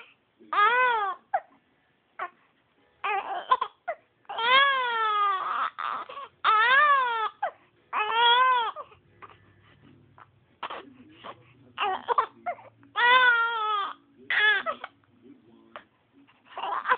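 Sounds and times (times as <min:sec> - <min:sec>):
infant crying with hiccups: 0:00.0 - 0:01.6, 0:03.0 - 0:09.4, 0:10.2 - 0:14.9, 0:16.6 - 0:16.9.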